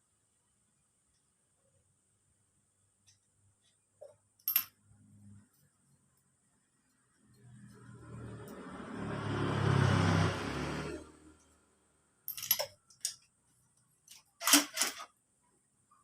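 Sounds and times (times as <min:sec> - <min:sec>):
metallic clinks of tools: 0:12.3 - 0:13.2.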